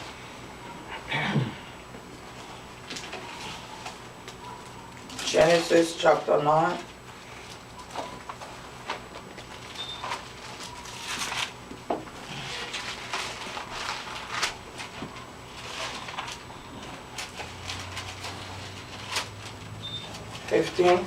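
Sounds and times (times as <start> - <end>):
pages rustling and flicking: 7.4 - 11.6, 12.4 - 21.0.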